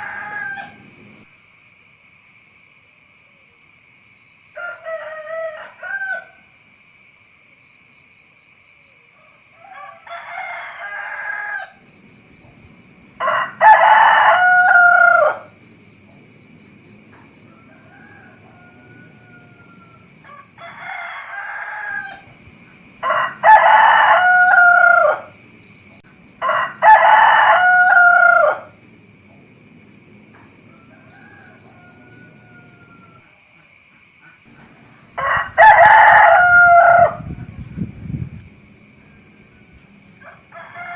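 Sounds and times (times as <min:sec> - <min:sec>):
rooster crowing: 0:00.0 - 0:01.0, 0:04.5 - 0:06.5, 0:09.0 - 0:12.0, 0:13.1 - 0:15.7, 0:17.1 - 0:22.4, 0:23.0 - 0:28.9, 0:30.3 - 0:33.6, 0:34.6 - 0:37.5, 0:39.0 - 0:40.9
insects chirping: 0:00.0 - 0:40.9.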